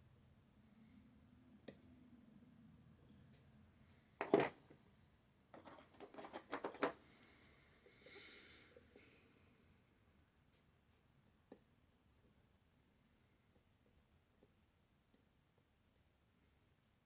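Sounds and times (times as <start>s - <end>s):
lock picks clicking and rattling: 5.6s - 7.0s.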